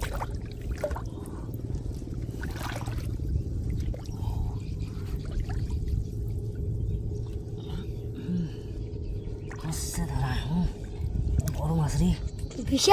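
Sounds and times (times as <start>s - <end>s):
water splashing and trickling: 0.0s - 8.3s, 9.3s - 12.9s
steady low rumble: 0.0s - 12.9s.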